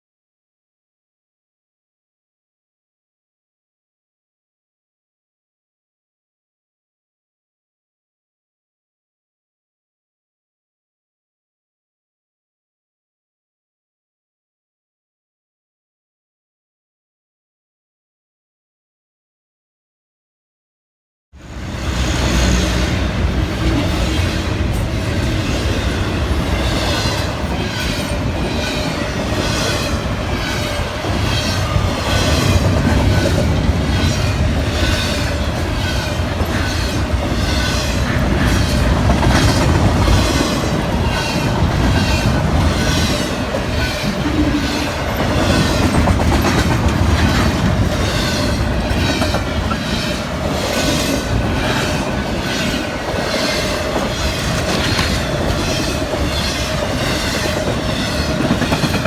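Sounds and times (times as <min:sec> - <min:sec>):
train wheels clicking over rail joints: 0:21.9 - 0:59.0.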